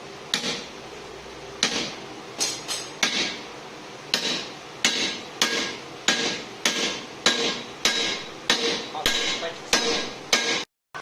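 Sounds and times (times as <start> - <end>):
hammer striking steel: 0.3 - 0.7, 1.6 - 3.4, 4.1 - 10.7.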